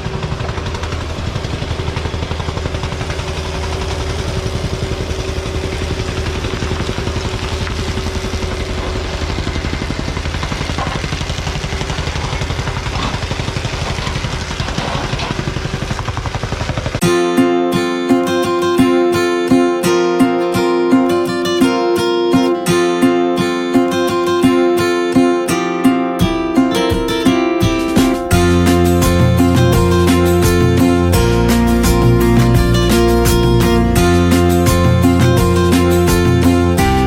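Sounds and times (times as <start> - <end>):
machinery engine running: 0.0 - 17.1, 26.2 - 37.0
acoustic guitar music: 17.0 - 37.0.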